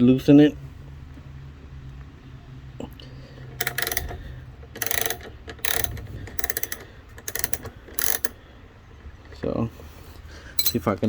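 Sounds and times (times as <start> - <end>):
socket ratchet clicking: 3.6 - 8.4.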